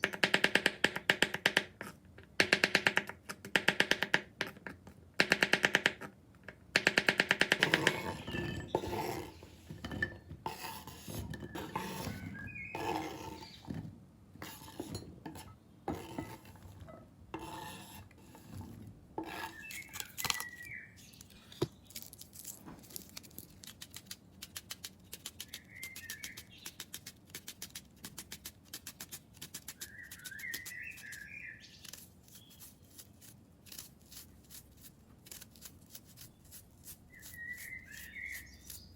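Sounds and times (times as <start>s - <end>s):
kitchen knocks and clinks: 7.6s - 17.0s
bird chirping: 11.4s - 13.8s, 19.4s - 22.0s, 25.3s - 26.9s, 29.7s - 32.9s, 37.1s - 38.9s.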